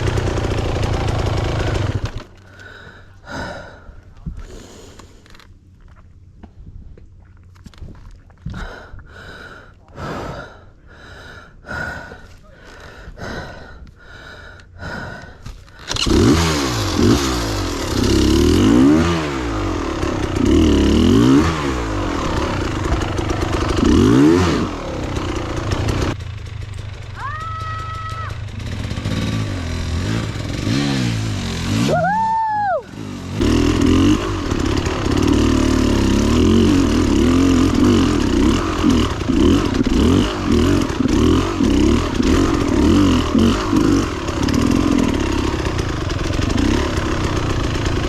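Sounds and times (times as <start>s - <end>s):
dirt bike engine revving: 0.0s - 2.4s, 15.9s - 48.0s
heavy rapid breathing: 1.2s - 5.4s, 8.4s - 16.0s.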